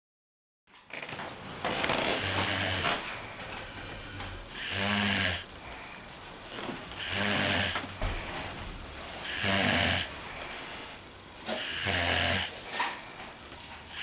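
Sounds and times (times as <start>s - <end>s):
man snoring: 1.9s - 3.0s, 3.8s - 5.5s, 7.0s - 7.9s, 9.2s - 10.1s, 11.5s - 12.6s
quiet breathing: 2.1s - 14.0s.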